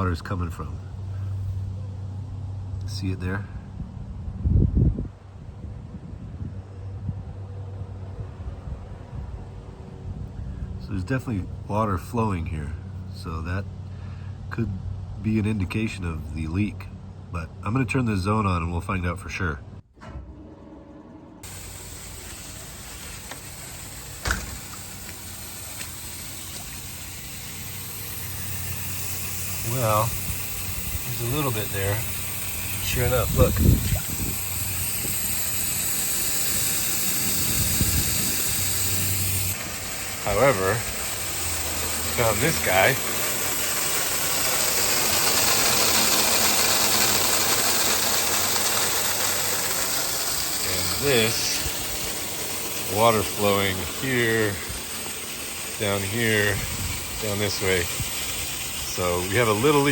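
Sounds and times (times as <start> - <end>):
water spraying from sprinkler: 21.4 - 59.9.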